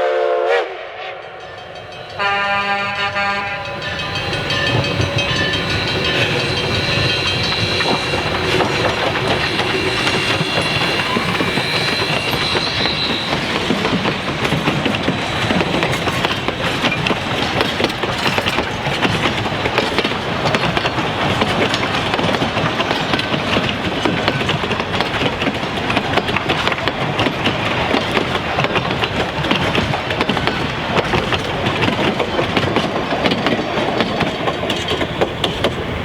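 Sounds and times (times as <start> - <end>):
high wheel squeal: 1.3 - 19.3
train wheels clattering over rail joints: 1.4 - 36.0.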